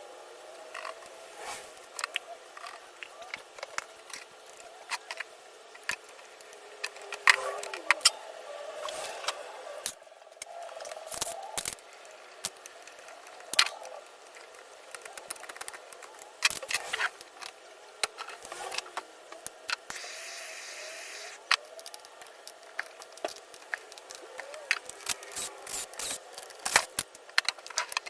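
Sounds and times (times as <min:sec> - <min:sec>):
small tools and parts rattling: 0:08.8 - 0:20.6, 0:21.4 - 0:28.0.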